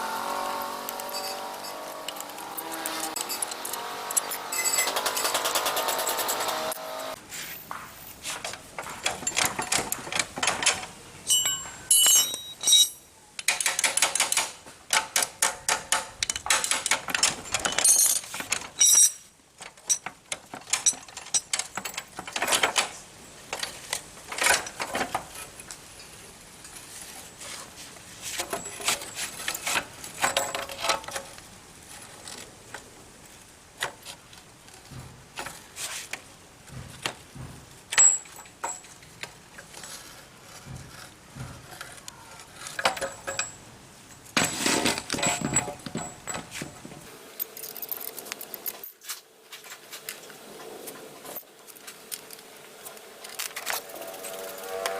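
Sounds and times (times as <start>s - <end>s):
metal tools clinking: 0.9s - 7.0s, 8.5s - 23.0s, 28.4s - 31.3s, 37.9s - 40.2s, 42.6s - 49.2s
metallic rings: 1.0s - 6.7s, 11.2s - 13.1s, 16.5s - 20.1s.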